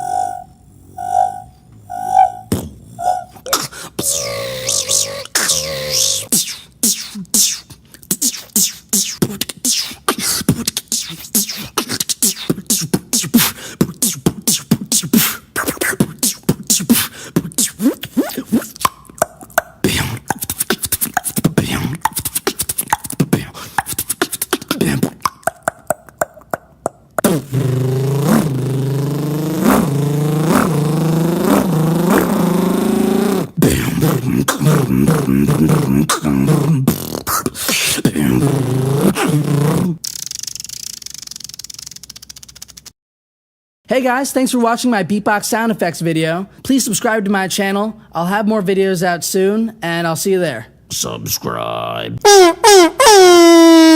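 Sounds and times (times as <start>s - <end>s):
buzzing vocal tone bending in pitch: 0.0s - 7.6s, 15.7s - 40.8s
beatboxing mouth clicks and hits: 2.5s - 42.9s.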